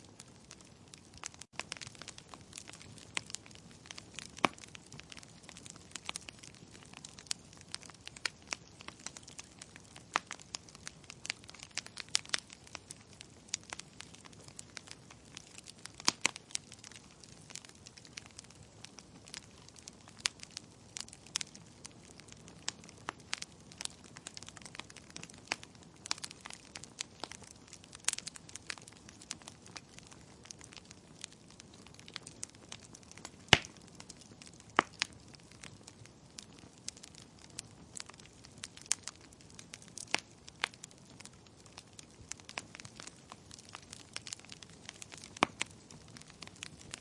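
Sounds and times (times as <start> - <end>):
logs crackling in fireplace: 0.0 - 47.0.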